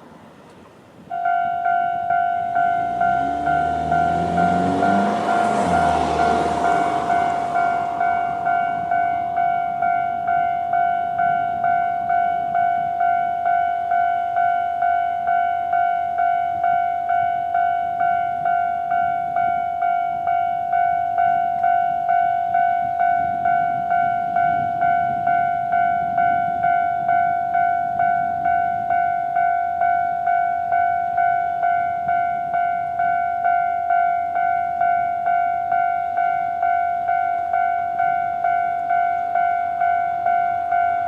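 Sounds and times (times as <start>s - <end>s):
level-crossing alarm electronic bell: 1.1s - 41.0s.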